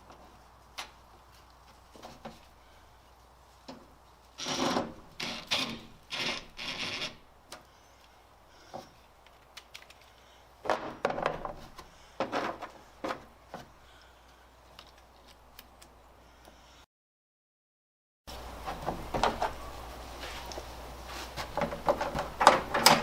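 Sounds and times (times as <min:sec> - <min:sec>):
rubbing scraping strokes on metal: 0:04.2 - 0:07.3.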